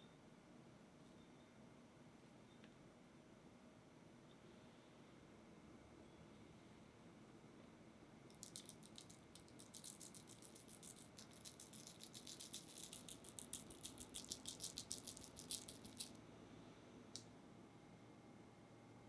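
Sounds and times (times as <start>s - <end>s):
crumbs sprinkled onto cake: 8.3s - 16.2s.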